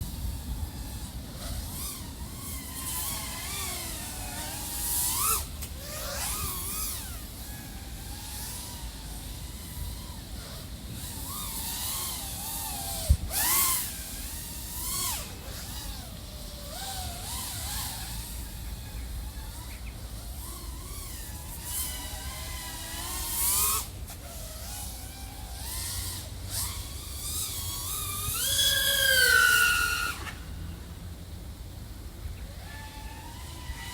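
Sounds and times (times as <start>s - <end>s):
drone motors whining: 0.0s - 33.9s.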